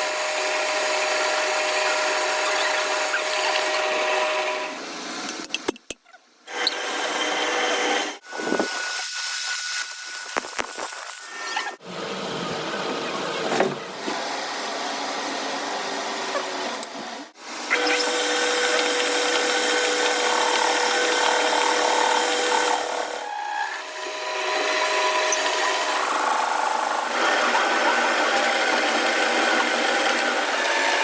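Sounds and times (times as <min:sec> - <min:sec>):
power tool on metal: 0:00.0 - 0:04.8, 0:06.5 - 0:11.8, 0:17.6 - 0:31.0.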